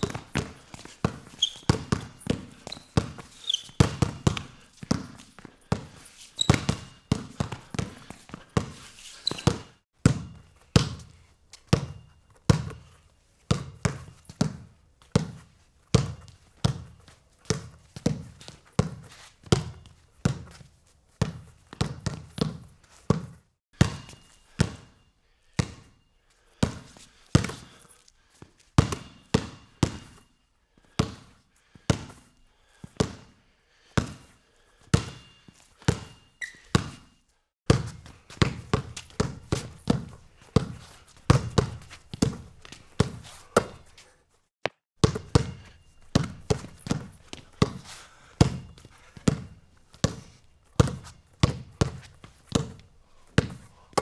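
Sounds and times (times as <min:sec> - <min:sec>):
ball bouncing: 0:00.0 - 0:08.0, 0:37.7 - 0:43.9, 0:44.6 - 0:47.8.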